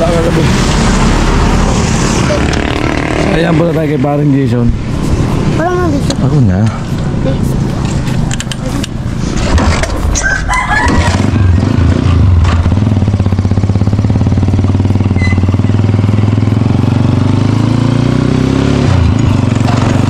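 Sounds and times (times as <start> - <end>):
rooster crowing: 10.2 - 11.7.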